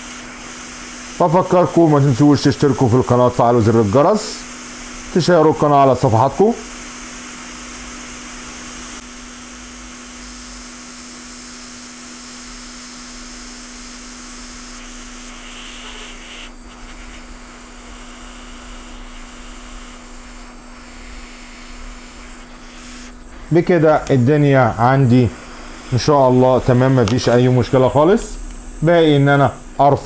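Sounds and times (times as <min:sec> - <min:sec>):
hot air blowing hiss: 0:00.0 - 0:30.0
low fan hum: 0:16.6 - 0:30.0.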